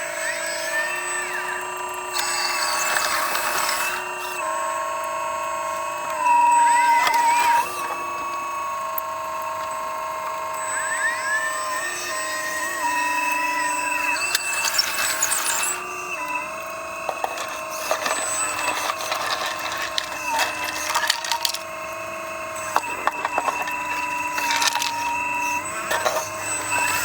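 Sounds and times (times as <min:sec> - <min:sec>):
electric motor whine: 0:00.0 - 0:27.0
bucket knocking on stones: 0:17.1 - 0:21.6, 0:22.7 - 0:25.1.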